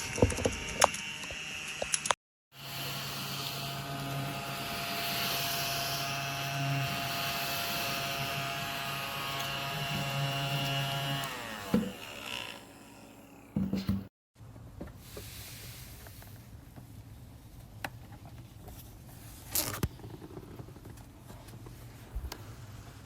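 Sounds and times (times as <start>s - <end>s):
vacuum motor humming: 0.0s - 14.0s.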